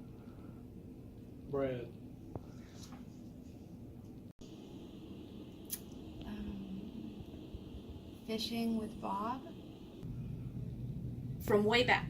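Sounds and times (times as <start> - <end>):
faint low voice hum: 6.1 - 7.5.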